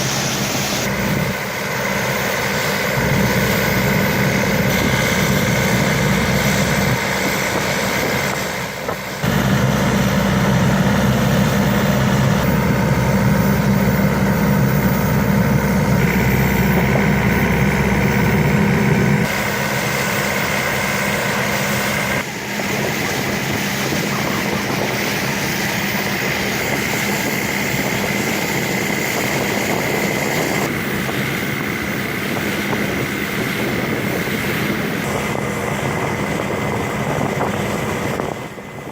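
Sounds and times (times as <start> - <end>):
boat engine running: 0.0 - 38.9.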